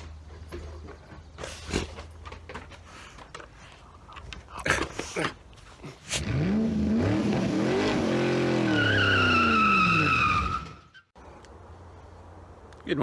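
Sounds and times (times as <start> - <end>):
engine revving: 6.1 - 10.7
high squeal: 8.6 - 11.1.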